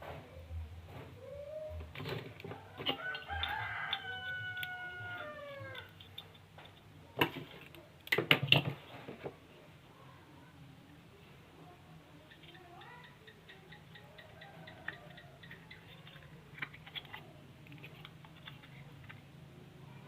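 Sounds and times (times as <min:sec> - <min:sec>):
rooster crowing: 0:02.7 - 0:05.9.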